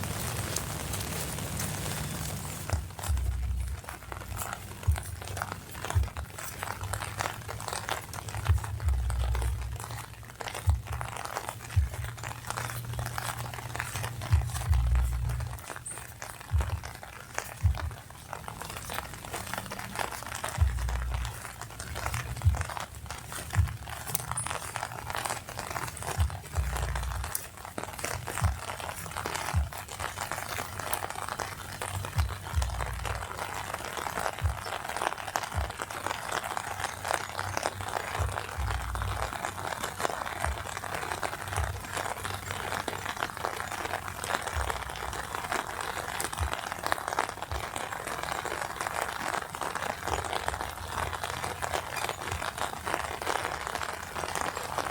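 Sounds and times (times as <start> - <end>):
dull low thuds: 0.0 - 15.8, 16.4 - 19.8, 20.4 - 34.9, 35.5 - 36.1, 37.9 - 39.4
rain pattering on an umbrella: 0.0 - 54.9.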